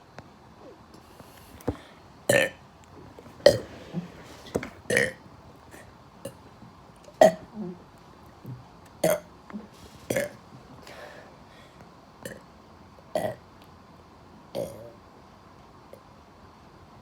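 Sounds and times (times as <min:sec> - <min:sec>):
person burping: 0:01.6 - 0:02.6, 0:03.4 - 0:05.2.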